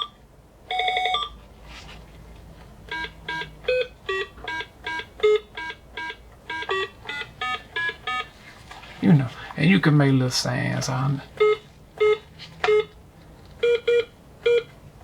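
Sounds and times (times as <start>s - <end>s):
electronic beeps playing a tune: 2.9s - 8.3s.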